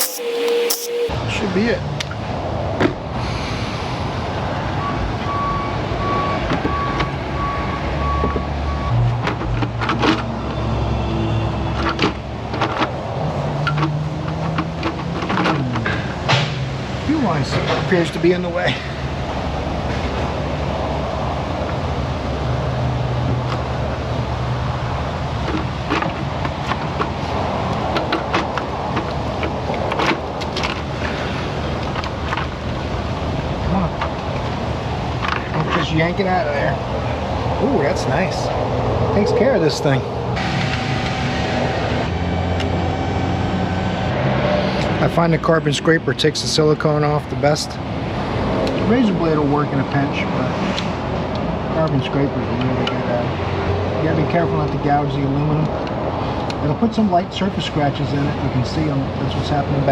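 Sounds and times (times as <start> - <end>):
tools clicking and tapping: 0.0 - 1.1
vehicle reversing alarm beeping: 0.0 - 1.1, 4.7 - 9.1
low hum of shop noise: 0.0 - 3.4, 4.0 - 59.9
steady background noise: 0.0 - 3.4, 4.0 - 59.9.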